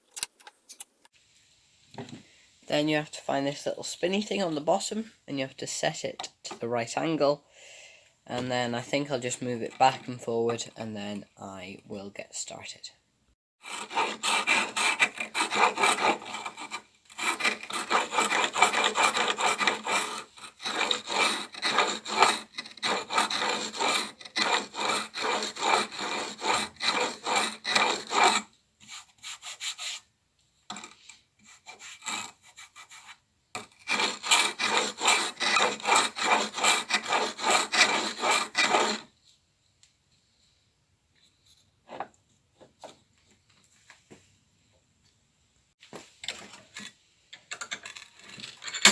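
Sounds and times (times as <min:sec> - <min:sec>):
steel scraping on oilstone: 0:13.6 - 0:28.5, 0:33.0 - 0:39.1, 0:48.6 - 0:48.9.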